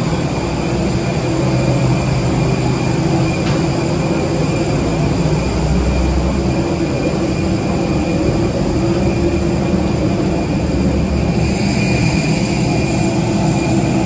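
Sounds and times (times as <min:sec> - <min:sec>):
engine rumble: 0:00.0 - 0:14.0.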